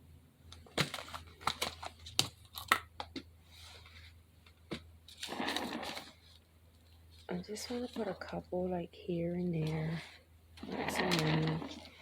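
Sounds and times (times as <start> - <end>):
crinkling rustle: 5.1 - 8.4, 9.6 - 12.0.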